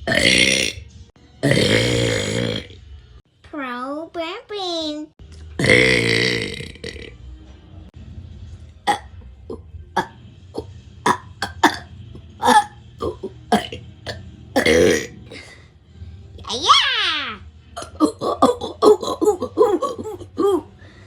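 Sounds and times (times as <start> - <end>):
child burping loudly: 0.0 - 0.8, 1.4 - 2.7, 5.6 - 7.1, 8.9 - 9.1, 10.0 - 15.5, 16.5 - 20.7.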